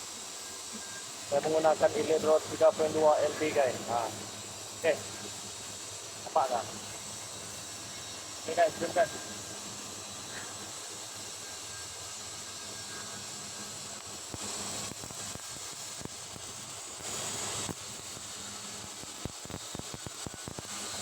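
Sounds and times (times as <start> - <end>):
welding arc hissing and crackling: 0.0 - 21.0
welding arc sharp pops: 13.9 - 17.9.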